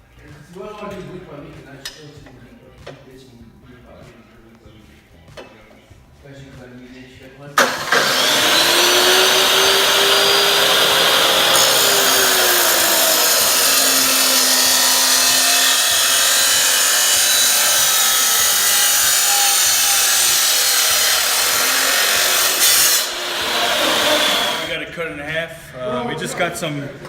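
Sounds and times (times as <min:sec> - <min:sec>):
power saw cutting pipe: 0:07.6 - 0:24.8.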